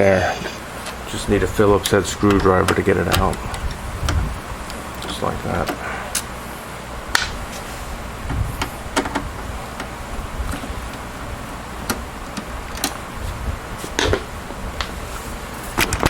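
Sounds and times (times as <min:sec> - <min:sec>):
steady low rumble: 0:00.5 - 0:16.0
screwdriver and screws clicking on metal: 0:01.7 - 0:06.3, 0:11.9 - 0:13.0.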